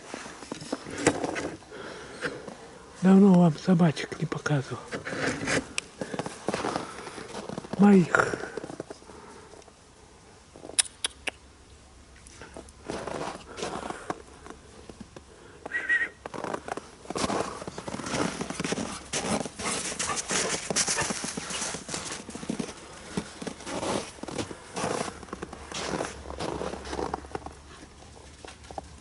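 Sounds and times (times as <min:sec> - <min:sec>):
dog paws thudding on ground: 0:16.3 - 0:29.0.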